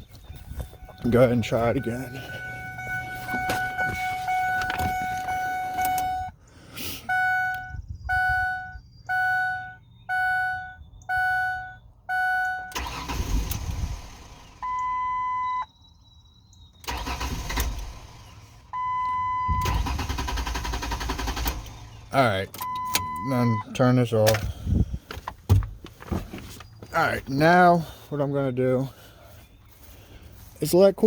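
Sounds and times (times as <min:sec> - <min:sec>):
car warning chime beeping: 0:00.0 - 0:06.4, 0:07.0 - 0:13.2, 0:14.6 - 0:15.9, 0:18.7 - 0:21.4, 0:22.5 - 0:23.8
high steady warning tone: 0:00.6 - 0:06.4, 0:07.0 - 0:12.8, 0:22.5 - 0:23.7
engine starter cranking: 0:12.6 - 0:14.9, 0:16.8 - 0:23.3.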